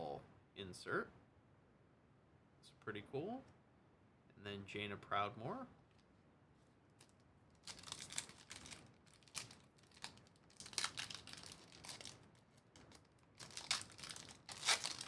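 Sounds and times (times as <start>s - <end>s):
card wrappers crinkling: 7.6s - 15.0s.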